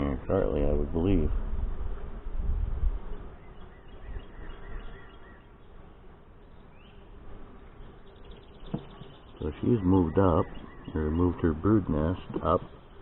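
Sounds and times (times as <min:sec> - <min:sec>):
honey bees buzzing: 0:00.0 - 0:13.0
bird chirps: 0:03.1 - 0:13.0.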